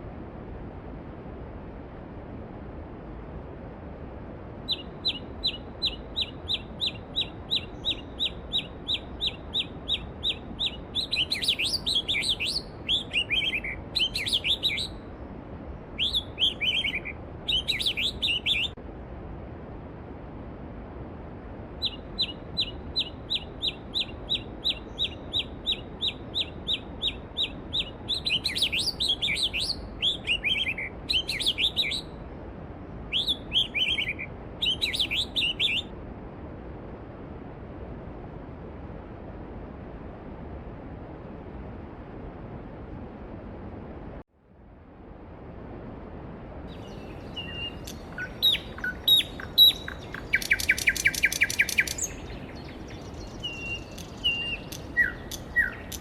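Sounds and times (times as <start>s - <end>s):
songbird singing: 4.6s - 15.2s, 16.0s - 18.8s, 21.8s - 32.2s, 33.1s - 35.9s, 46.7s - 56.0s
stream rushing: 46.8s - 56.0s.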